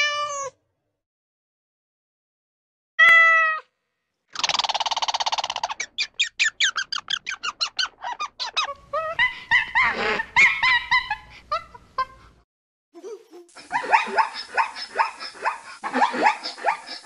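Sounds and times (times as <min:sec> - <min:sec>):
small animal chirps: 0:04.3 - 0:08.8
small animal squeaking: 0:04.4 - 0:09.1.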